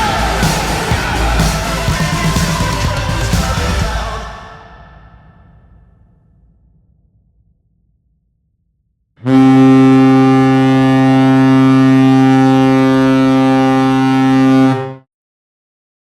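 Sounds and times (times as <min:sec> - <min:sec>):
low goal horn blast: 0:09.2 - 0:15.0.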